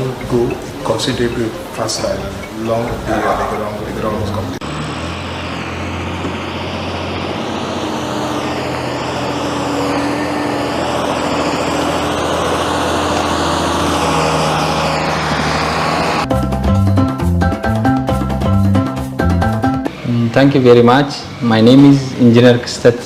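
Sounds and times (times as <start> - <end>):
heavy vehicle engine running: 0.0 - 23.0
drum-led music: 16.2 - 20.3.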